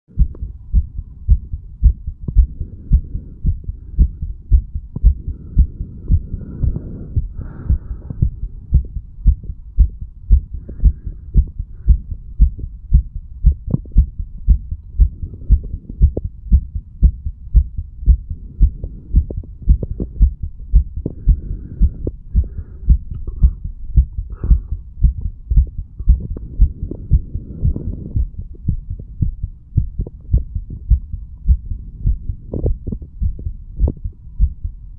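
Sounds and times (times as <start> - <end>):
heartbeat thumps: 0.1 - 34.9
low hum: 0.1 - 34.9.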